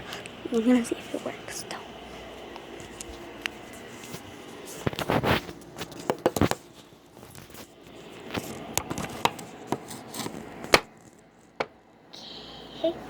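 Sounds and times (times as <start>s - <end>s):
objects being handled: 3.7s - 11.7s.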